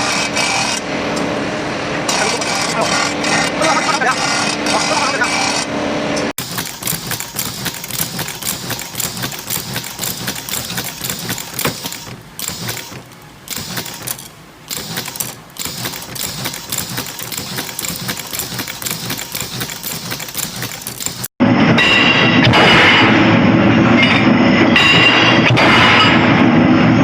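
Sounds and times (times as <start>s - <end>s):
machine clattering: 6.4s - 21.4s.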